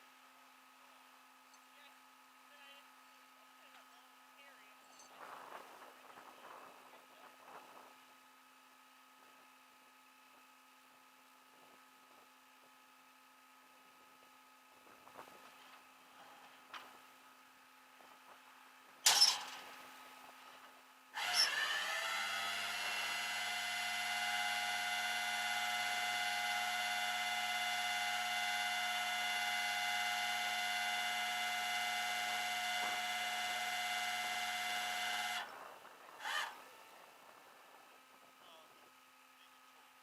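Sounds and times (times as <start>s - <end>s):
sharp metallic clank: 19.1s - 19.6s
winch whining: 21.2s - 35.6s, 36.2s - 36.8s.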